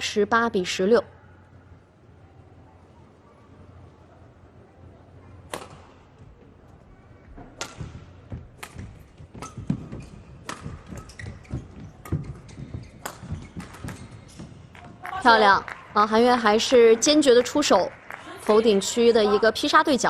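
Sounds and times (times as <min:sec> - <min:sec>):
rackets striking shuttlecock: 0:05.5 - 0:06.0, 0:07.4 - 0:15.0.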